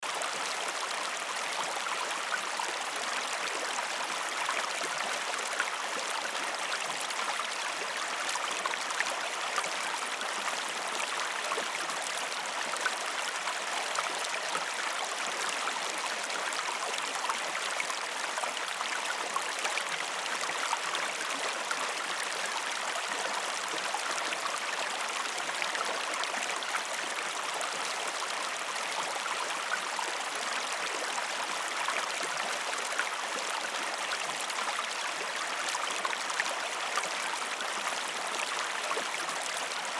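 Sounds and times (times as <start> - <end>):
river water flowing over stones: 0.0 - 39.9.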